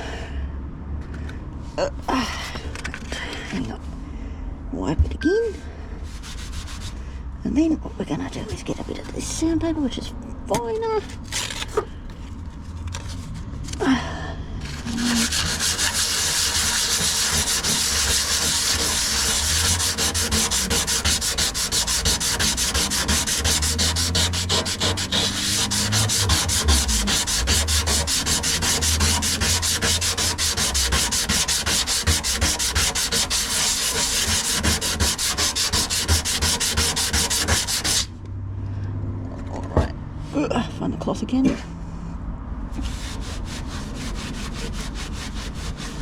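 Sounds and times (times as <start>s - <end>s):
sandpaper rubbing on metal: 6.1s - 7.0s, 14.6s - 38.1s, 42.8s - 46.0s.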